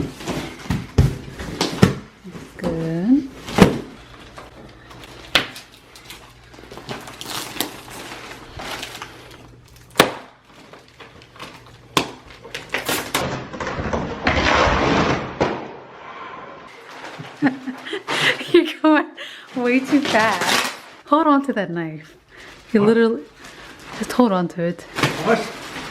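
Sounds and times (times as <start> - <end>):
packaging rustling: 3.6 - 13.8, 16.7 - 18.4, 19.4 - 21.0, 25.0 - 25.9.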